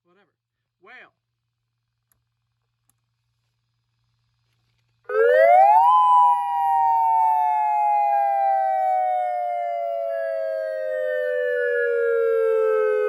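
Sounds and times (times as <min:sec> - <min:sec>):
electronic dual-tone siren wail: 0:05.1 - 0:13.0.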